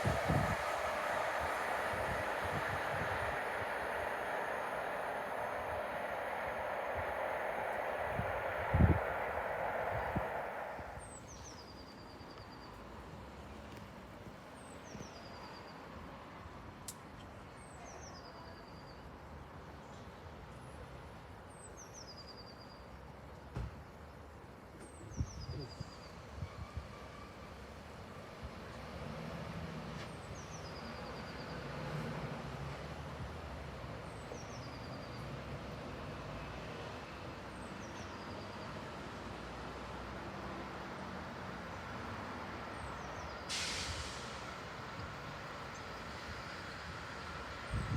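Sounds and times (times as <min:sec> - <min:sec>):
train engine idling hum: 0:00.0 - 0:11.2, 0:37.3 - 0:47.9.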